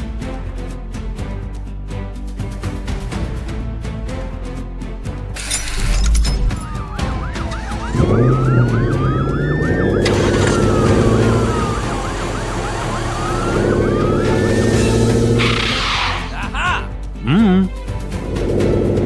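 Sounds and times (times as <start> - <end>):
wailing siren: 6.6 - 16.3
yelping siren: 6.6 - 16.4.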